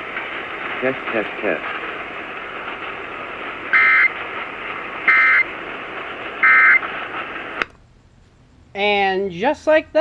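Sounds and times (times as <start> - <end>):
radio hiss: 0.0 - 7.8
screechy data tone bursts: 3.7 - 4.2, 5.0 - 5.5, 6.4 - 6.9.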